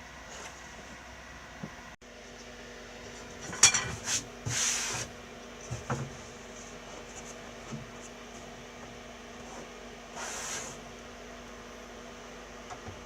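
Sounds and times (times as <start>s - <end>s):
brushing scrape: 3.9s - 5.1s, 9.4s - 10.8s.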